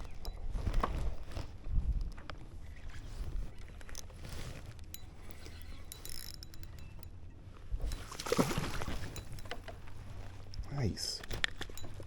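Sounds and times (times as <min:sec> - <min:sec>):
fishing reel clicking: 0:04.8 - 0:07.2.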